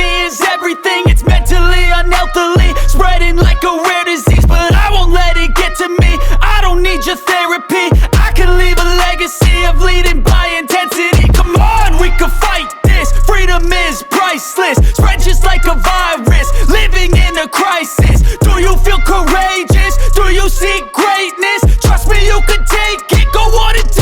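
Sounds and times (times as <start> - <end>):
hip hop music with deep bass: 0.0 - 24.0.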